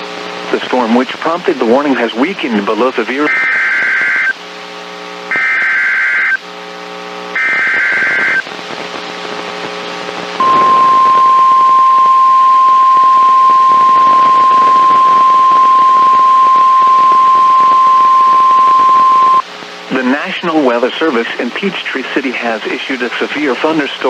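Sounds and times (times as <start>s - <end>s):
data bursts: 10.4s - 19.4s
low buzz: 10.4s - 19.4s
steady weather alert tone: 10.4s - 19.4s.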